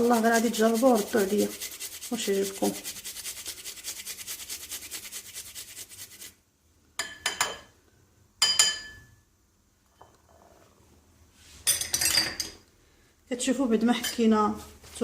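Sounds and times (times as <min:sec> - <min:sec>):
garlic being grated: 0:00.0 - 0:06.4.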